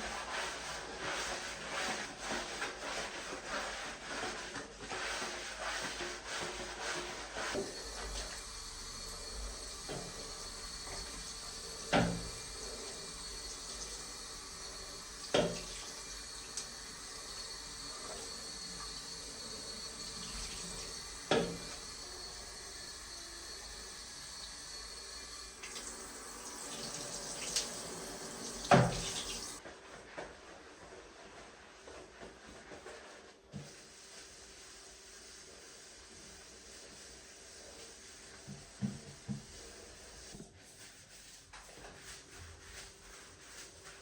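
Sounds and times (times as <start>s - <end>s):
tap running into sink: 7.5s - 19.2s, 19.8s - 22.0s, 25.6s - 29.6s.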